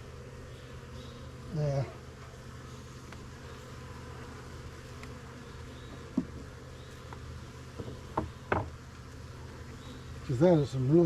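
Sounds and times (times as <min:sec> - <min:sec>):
bees buzzing: 0:00.0 - 0:11.0
short knocks: 0:07.8 - 0:08.7.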